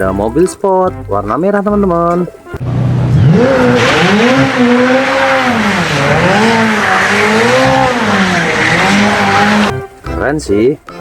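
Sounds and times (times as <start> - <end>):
race car engine revving: 2.6 - 9.7.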